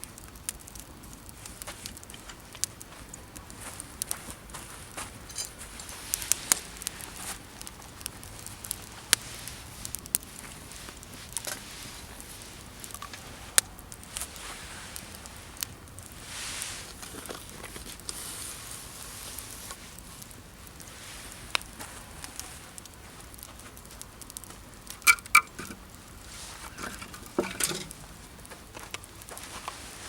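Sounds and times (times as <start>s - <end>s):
campfire crackling and popping: 0.0s - 30.0s
sharp clicks: 0.1s - 4.2s, 21.5s - 28.0s
person rustling around camp: 0.4s - 30.0s.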